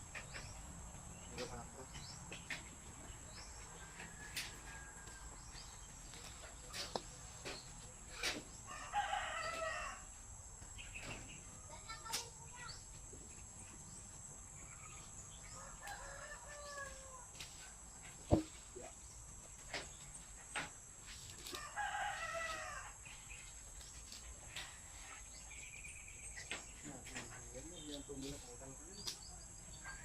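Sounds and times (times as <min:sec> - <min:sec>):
rooster crowing: 0:03.8 - 0:05.4, 0:08.7 - 0:10.2, 0:15.5 - 0:17.4, 0:21.5 - 0:23.0
sharp knocks: 0:18.3 - 0:18.6.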